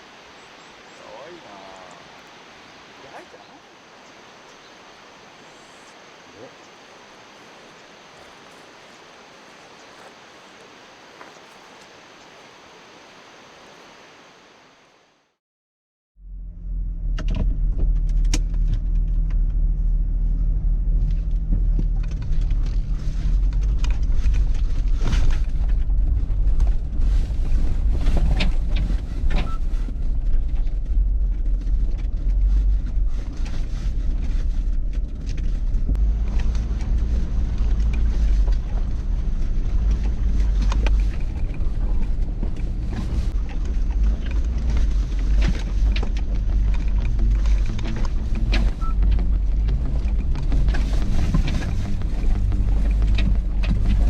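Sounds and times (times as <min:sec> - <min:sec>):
engine and road noise rumble: 0:16.2 - 0:54.0.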